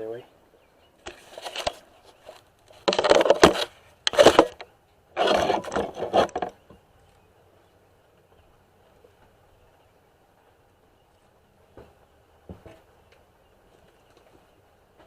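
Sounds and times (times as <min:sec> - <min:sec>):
hand tools scraping and rattling: 0:05.2 - 0:06.6.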